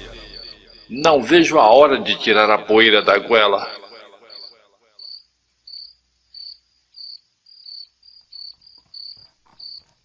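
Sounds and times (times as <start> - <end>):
crickets chirping: 0.0 - 10.0.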